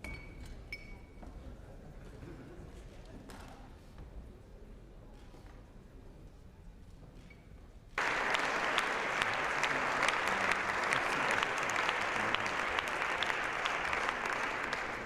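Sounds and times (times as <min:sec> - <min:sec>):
faint background noise: 0:00.0 - 0:15.0
crowd applauding: 0:08.0 - 0:15.0.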